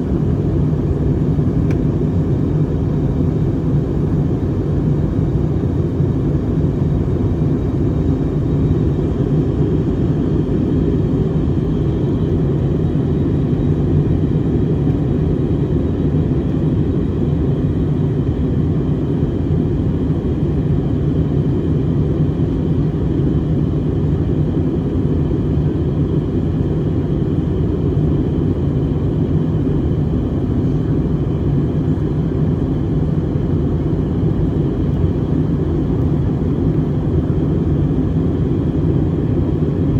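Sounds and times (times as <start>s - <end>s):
jet engine cabin rumble: 0.0s - 39.9s.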